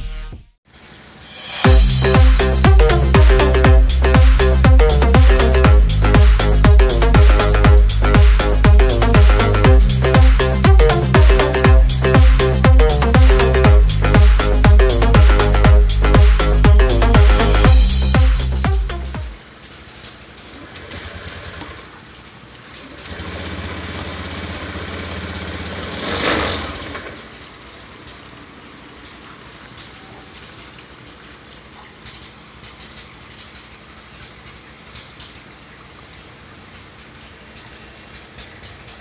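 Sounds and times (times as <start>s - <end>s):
motorcycle engine revving: 23.0s - 27.3s.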